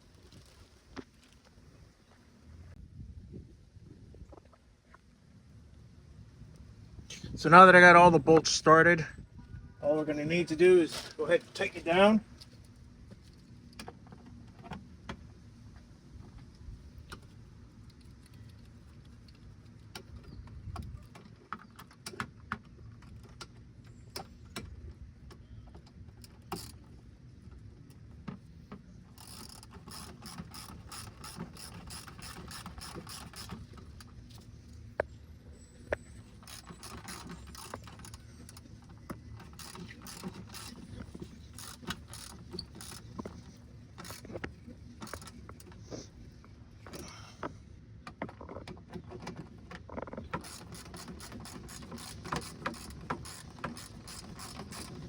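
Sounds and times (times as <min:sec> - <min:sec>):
ratchet wrench clicking: 0:29.2 - 0:33.7, 0:39.4 - 0:44.3, 0:50.4 - 0:55.0.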